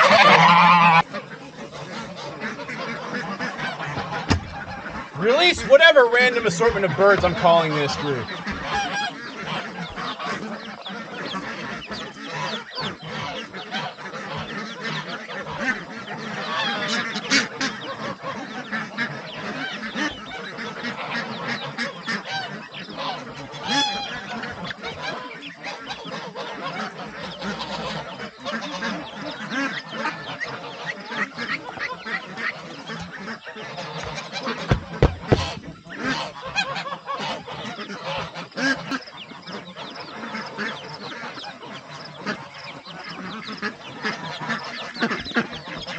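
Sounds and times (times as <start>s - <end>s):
ducks quacking: 0.0s - 45.9s
geese honking: 0.0s - 45.9s
sharp knocks: 4.0s - 5.8s, 6.6s - 7.6s, 34.0s - 36.6s.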